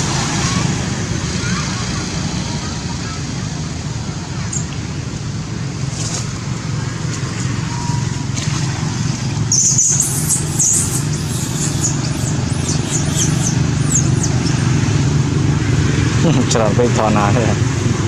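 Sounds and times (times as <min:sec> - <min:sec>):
low rumble of traffic: 0:00.0 - 0:18.0
high-pitched falling chirps: 0:09.5 - 0:14.7.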